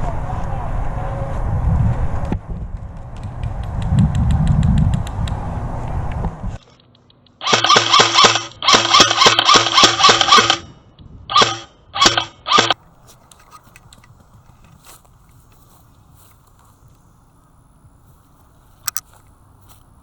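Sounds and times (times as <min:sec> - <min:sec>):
airsoft gun rapid fire: 0:07.4 - 0:10.7, 0:11.3 - 0:12.8.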